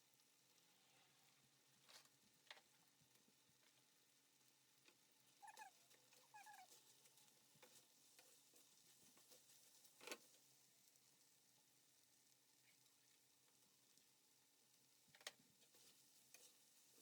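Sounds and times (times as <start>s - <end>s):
squeaky chirps: 5.4s - 6.7s.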